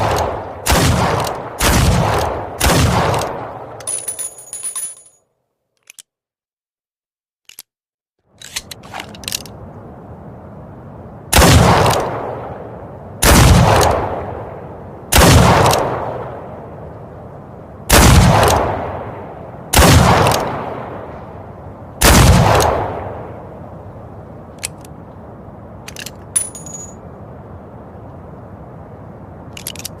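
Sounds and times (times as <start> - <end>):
gunshots with echoing tail: 0.0 - 3.8, 11.3 - 12.6, 13.2 - 16.4, 17.9 - 21.1, 22.0 - 23.3
metallic ring: 26.3 - 27.0.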